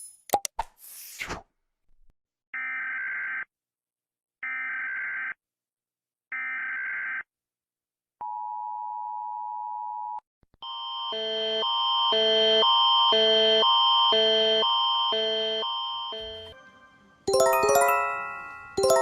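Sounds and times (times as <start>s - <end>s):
alarm sound: 15.2s - 16.6s.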